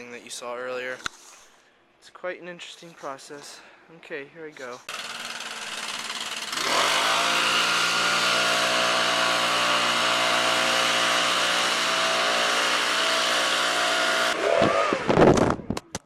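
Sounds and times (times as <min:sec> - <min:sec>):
leaf blower engine: 0:04.9 - 0:15.2.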